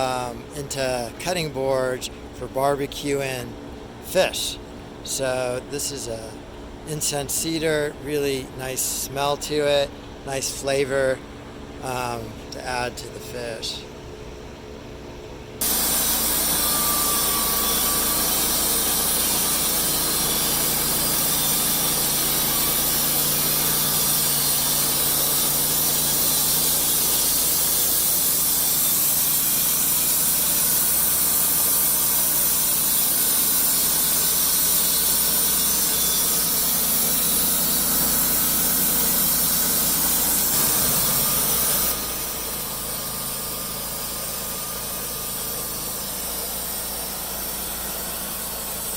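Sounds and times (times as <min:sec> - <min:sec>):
band sawmill sawing log: 0:00.0 - 0:02.0, 0:15.6 - 0:48.9.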